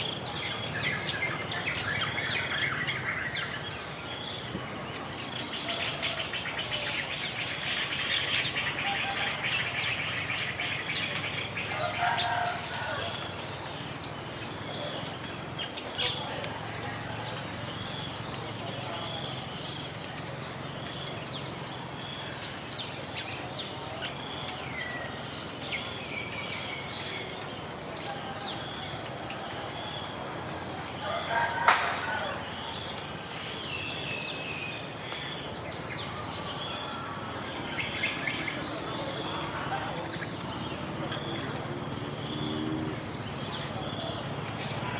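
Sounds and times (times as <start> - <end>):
small birds chirping: 0.0 - 44.9
rooster crowing: 11.6 - 13.3, 30.7 - 32.8.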